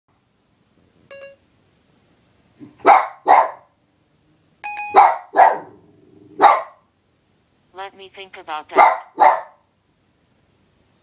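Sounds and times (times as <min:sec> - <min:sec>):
electronic beep: 0:01.1 - 0:01.4
dog barking: 0:02.6 - 0:03.8, 0:04.9 - 0:05.8, 0:06.4 - 0:06.9, 0:08.7 - 0:09.7.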